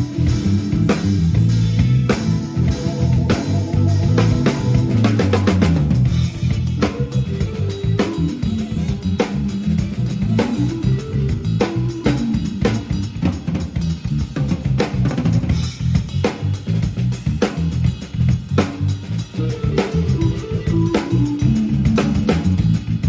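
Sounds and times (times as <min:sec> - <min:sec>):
bass guitar line: 0:00.0 - 0:23.0
drum kit beat: 0:00.0 - 0:23.0.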